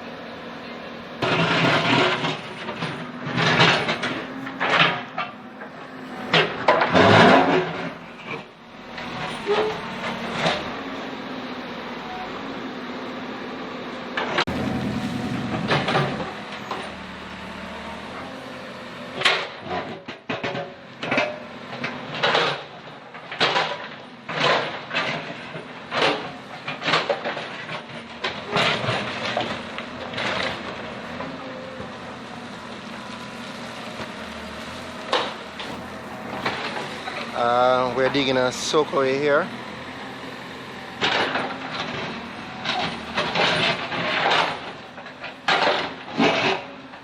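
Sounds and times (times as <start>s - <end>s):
diesel engine running: 0.0s - 47.0s
bucket clanking and scraping: 1.2s - 11.0s, 19.2s - 32.0s, 40.9s - 46.8s.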